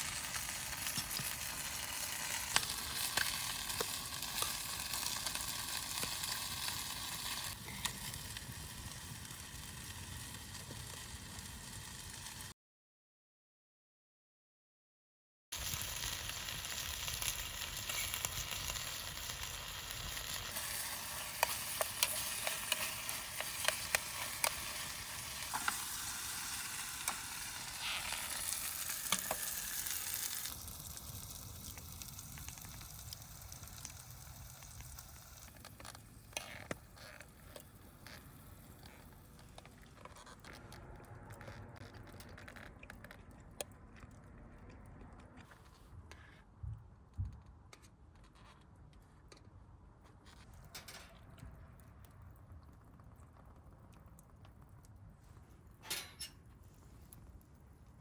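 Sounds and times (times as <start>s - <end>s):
chicken sizzling in a pan: 0.0s - 12.5s, 15.6s - 39.5s
utensils clicking against pan: 20.3s - 30.4s, 55.8s - 56.4s.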